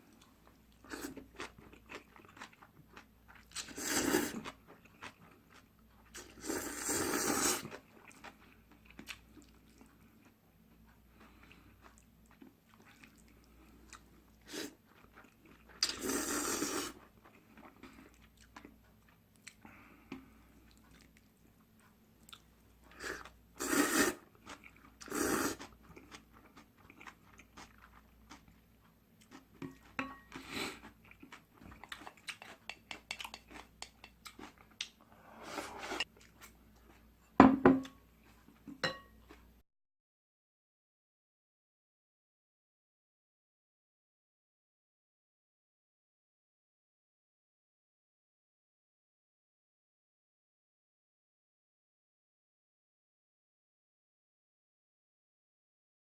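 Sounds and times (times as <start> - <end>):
wet chewing: 0.1 - 6.5, 7.6 - 35.0.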